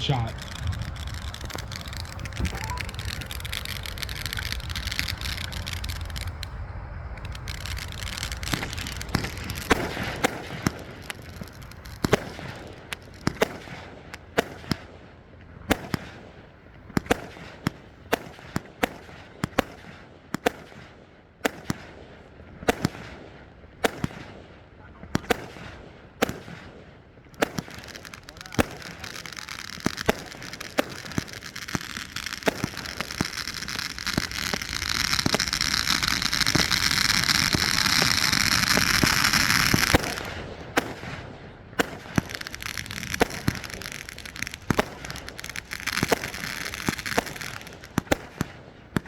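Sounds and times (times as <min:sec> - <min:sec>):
steady noise: 0:00.0 - 0:11.9
fireworks shots and bangs: 0:00.0 - 0:49.0.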